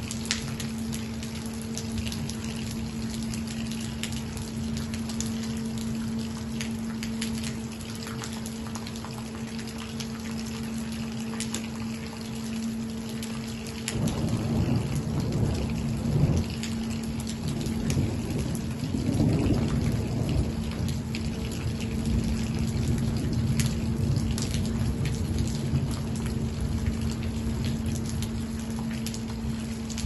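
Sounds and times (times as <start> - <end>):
rain drops ticking on surfaces: 0.0 - 30.0
steady low hum: 0.0 - 30.0
low rumble: 13.9 - 28.8.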